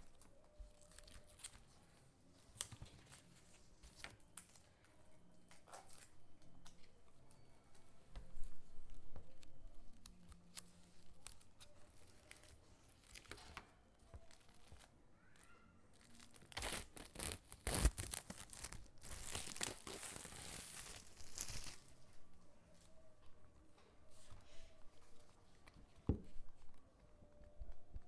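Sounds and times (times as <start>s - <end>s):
packaging tearing: 16.0s - 22.0s.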